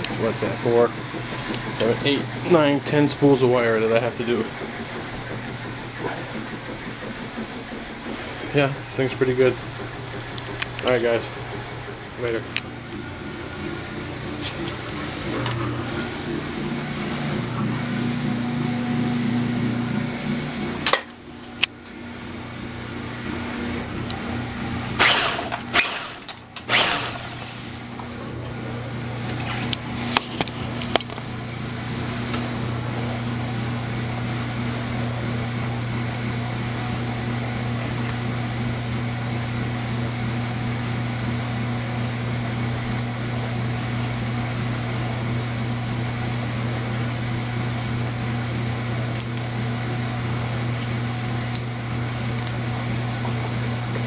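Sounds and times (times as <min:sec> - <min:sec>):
sharp clicks and knocks: 0:03.8 - 0:12.7
small motor humming: 0:23.3 - 0:27.9.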